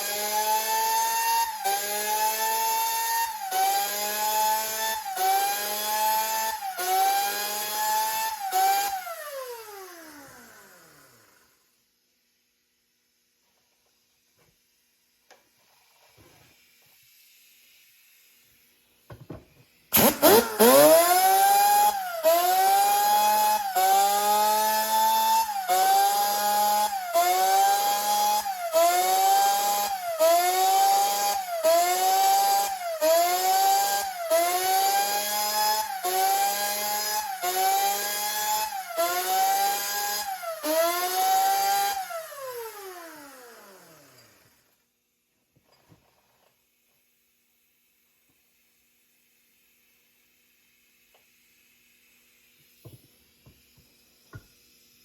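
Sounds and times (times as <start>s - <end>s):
electric grinder grinding chain: 0.0s - 11.6s, 20.0s - 44.7s.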